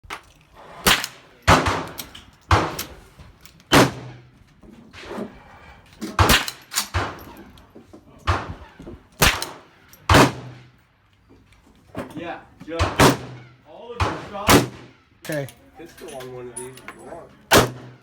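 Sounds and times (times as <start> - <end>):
gunshots with echo: 9.2 - 10.7, 12.8 - 15.0, 17.5 - 18.0.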